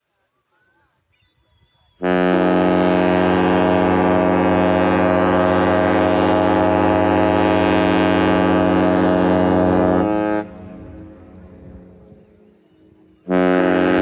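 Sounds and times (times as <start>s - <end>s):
ship horn long blast: 2.0s - 12.6s, 13.2s - 14.0s.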